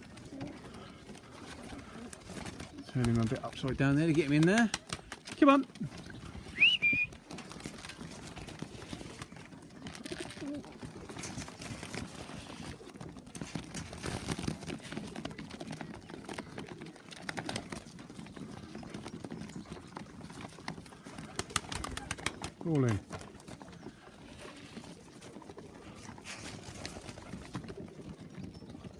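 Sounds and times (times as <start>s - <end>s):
pigeons cooing: 0.0s - 28.9s
wings and feet rustling: 0.0s - 28.9s.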